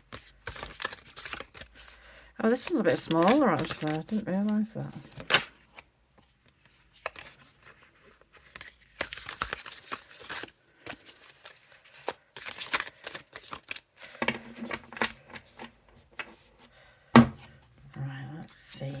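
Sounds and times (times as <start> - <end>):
cards being shuffled: 0.1 - 5.8, 6.6 - 16.5.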